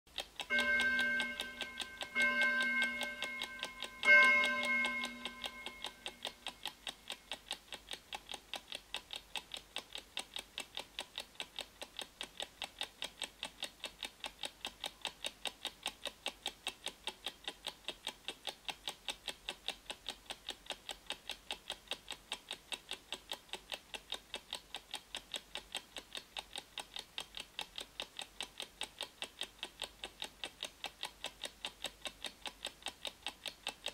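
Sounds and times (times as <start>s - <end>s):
clock ticking rapidly: 0.1s - 33.9s
pitched chime tones: 0.5s - 6.2s.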